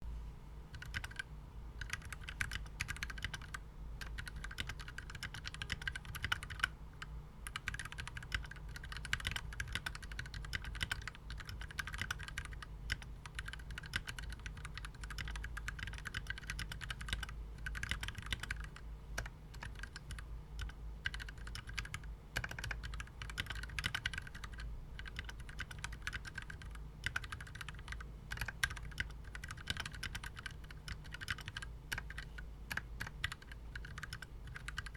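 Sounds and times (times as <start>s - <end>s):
faint steady low hum: 0.0s - 34.9s
typing on mechanical keyboard: 0.7s - 6.7s, 7.4s - 34.9s.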